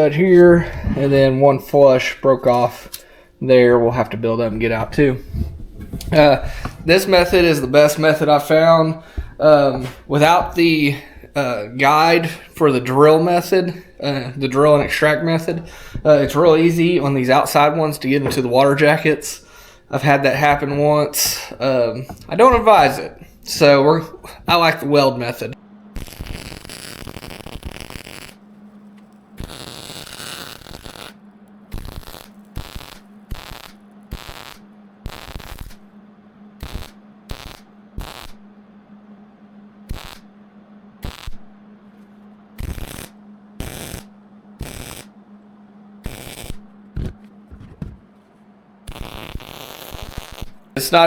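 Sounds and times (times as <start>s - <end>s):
steady low hum: 0.0s - 51.0s
welding arc crackling: 5.9s - 17.6s, 26.0s - 28.4s, 29.1s - 35.8s, 36.6s - 38.4s, 39.9s - 40.3s, 41.0s - 41.5s, 42.6s - 45.1s, 46.0s - 47.1s, 48.9s - 51.0s.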